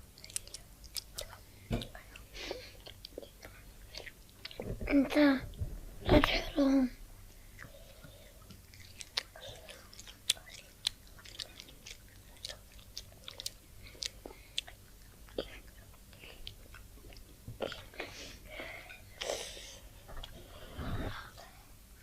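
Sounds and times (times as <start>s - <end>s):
chewing crunchy food: 0.0s - 4.8s, 7.3s - 18.2s
low thump: 4.6s - 6.4s.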